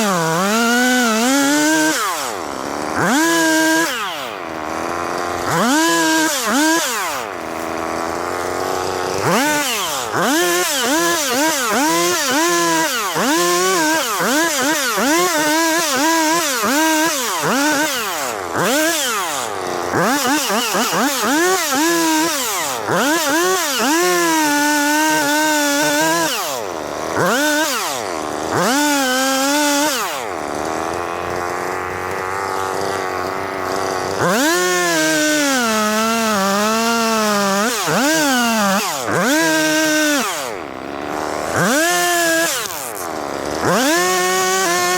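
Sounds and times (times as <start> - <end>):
chainsaw engine revving: 0.0 - 44.9.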